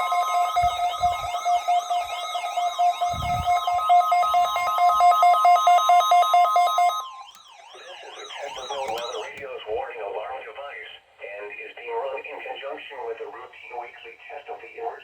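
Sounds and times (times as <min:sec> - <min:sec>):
rapid pulsing alarm beep: 0:00.0 - 0:09.4
warbling siren tone: 0:00.0 - 0:09.4.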